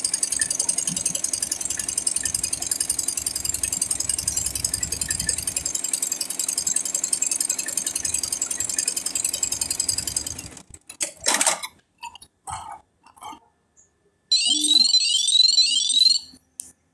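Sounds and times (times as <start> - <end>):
embroidery machine needle ticking: 0.0 - 10.6
rising electronic beeps: 14.3 - 16.4.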